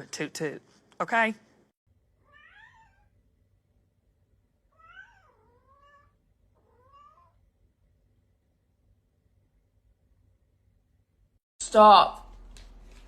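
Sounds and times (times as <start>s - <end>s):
cat meowing faintly: 2.2s - 3.2s, 4.7s - 7.5s.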